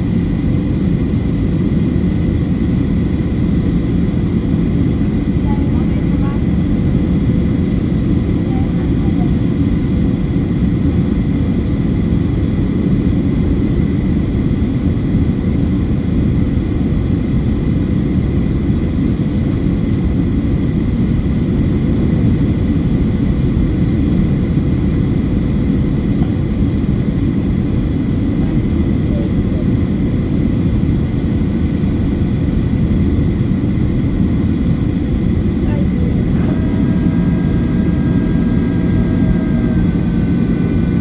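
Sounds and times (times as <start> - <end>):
aircraft cabin engine rumble: 0.0 - 41.0
faint steady tones: 34.9 - 41.0.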